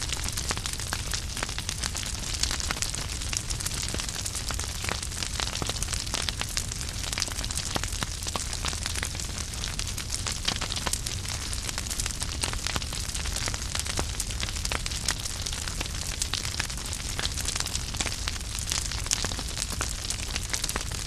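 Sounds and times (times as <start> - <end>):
flames rumbling and hissing: 0.0 - 21.0
logs crackling and popping: 0.0 - 21.0.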